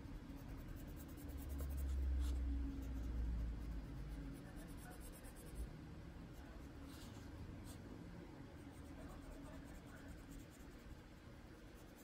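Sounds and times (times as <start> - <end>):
pencil scratching on paper: 0.0 - 5.7, 8.6 - 11.0, 11.6 - 12.0.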